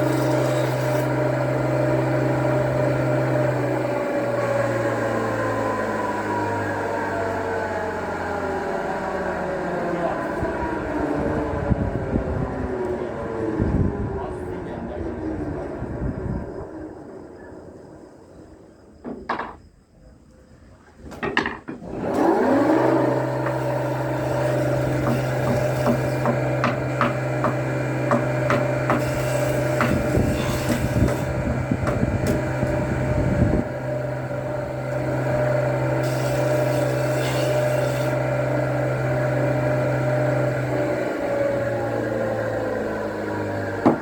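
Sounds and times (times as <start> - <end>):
power tool motor running: 0.0 - 7.4, 21.8 - 44.0
wood clicks and knocks: 19.0 - 19.6, 21.1 - 21.8.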